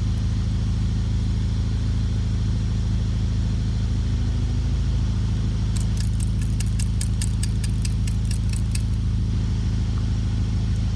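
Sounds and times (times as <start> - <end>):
car engine idling: 4.0 - 10.9
light metallic clicks: 5.8 - 9.0.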